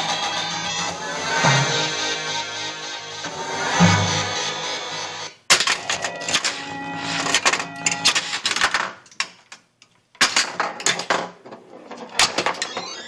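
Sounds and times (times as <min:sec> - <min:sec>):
pinball machine clicking: 0:05.6 - 0:06.6
electronic game tones: 0:05.9 - 0:08.1.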